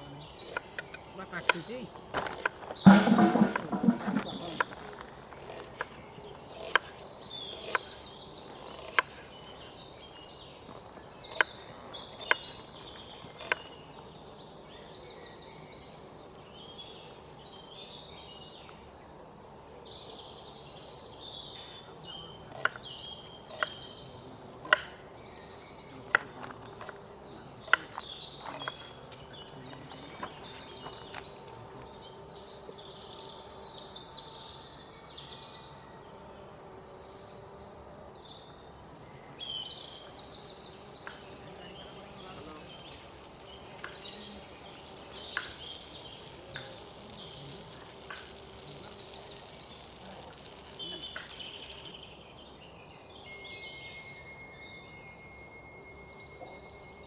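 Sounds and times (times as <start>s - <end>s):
birds chirping and calling: 0.0s - 14.4s, 21.6s - 33.1s, 39.0s - 52.5s
outdoor background noise: 0.0s - 57.0s
chopping knocks: 0.4s - 7.0s, 7.6s - 8.0s, 10.7s - 13.8s, 24.6s - 25.0s, 27.6s - 31.6s.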